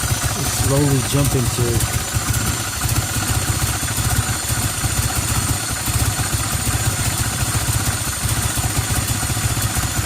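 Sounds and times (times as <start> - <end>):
car engine idling rough: 0.0 - 10.0.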